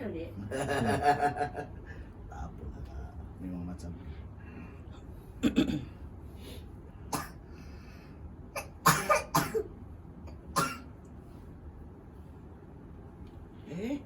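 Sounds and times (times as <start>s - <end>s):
person coughing: 5.4s - 5.9s, 7.1s - 7.4s, 8.6s - 9.7s, 10.6s - 10.9s.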